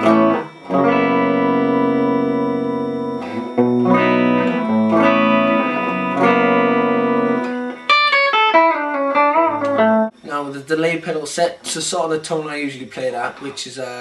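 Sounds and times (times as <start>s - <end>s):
electric guitar strummed chords: 0.0s - 10.3s
picked guitar notes: 0.0s - 10.4s.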